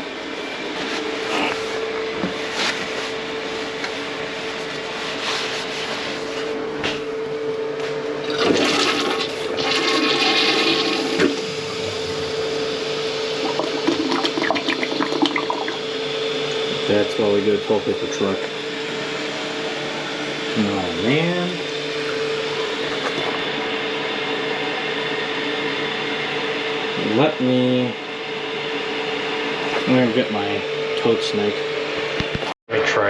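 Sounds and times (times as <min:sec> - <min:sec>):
toilet flushing: 0:08.2 - 0:12.4, 0:13.2 - 0:15.8.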